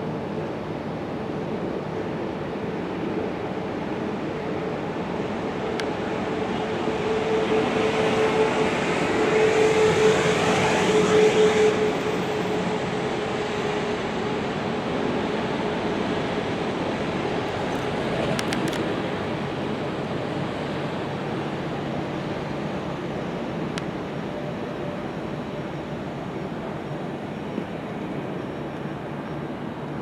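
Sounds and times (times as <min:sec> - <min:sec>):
traffic hum: 0:15.4 - 0:30.0.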